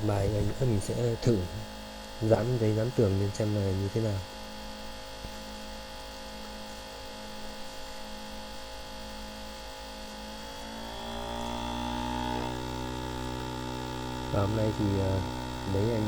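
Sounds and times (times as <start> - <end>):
steady multi-tone hum: 0.0 - 16.0.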